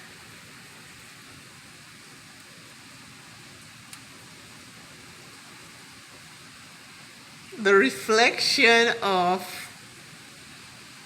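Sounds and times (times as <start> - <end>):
heavy rain: 0.0 - 11.0
faint tick: 3.9 - 4.1.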